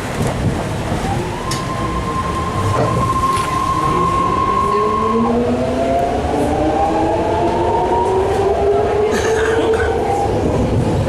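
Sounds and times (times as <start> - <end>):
train wheels rumbling on track: 0.0 - 11.0
rising tones: 1.1 - 8.9.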